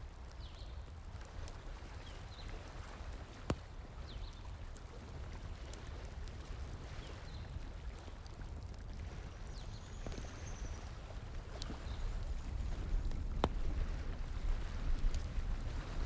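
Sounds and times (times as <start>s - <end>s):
crackling bonfire: 0.0s - 16.0s
running stream water: 0.0s - 16.0s
burning wood popping: 10.0s - 16.0s.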